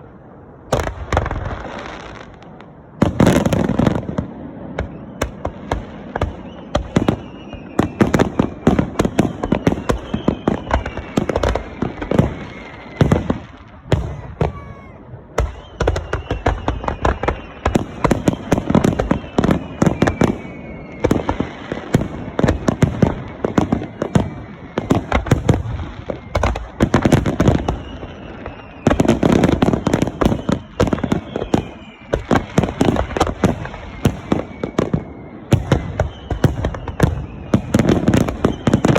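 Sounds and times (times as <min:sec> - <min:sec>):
falling whistling tones: 0:06.3 - 0:08.7, 0:09.4 - 0:13.5, 0:27.6 - 0:29.2, 0:30.3 - 0:32.2, 0:33.7 - 0:37.6.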